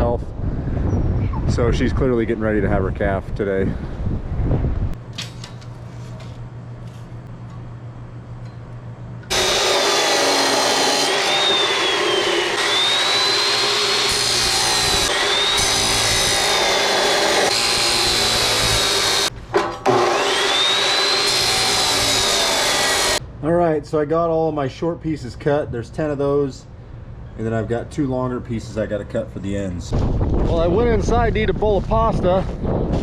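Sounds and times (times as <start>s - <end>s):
power saw cutting steel: 9.3s - 23.2s.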